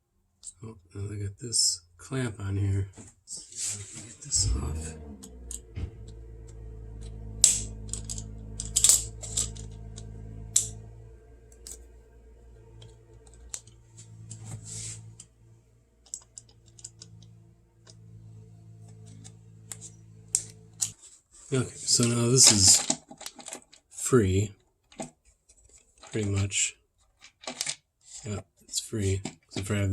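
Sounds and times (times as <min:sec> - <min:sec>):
steady low hum: 0:01.0 - 0:22.7.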